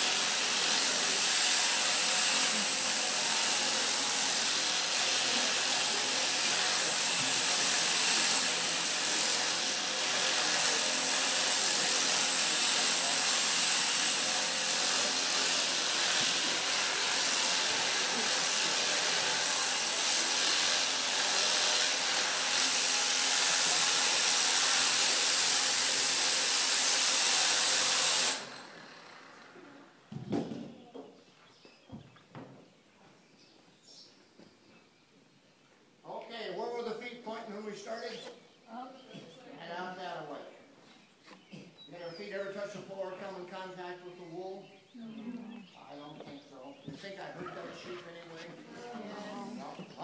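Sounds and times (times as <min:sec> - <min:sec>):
electric shears running: 0:00.0 - 0:30.5.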